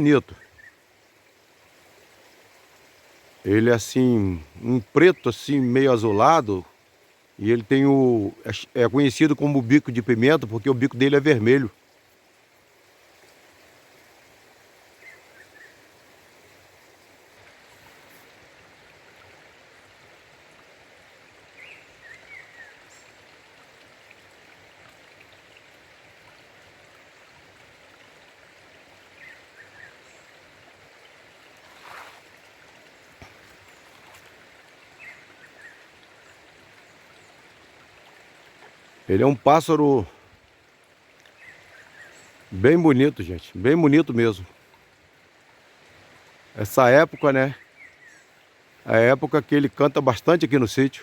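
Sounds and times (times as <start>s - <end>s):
waterfall rushing: 0.0s - 0.4s.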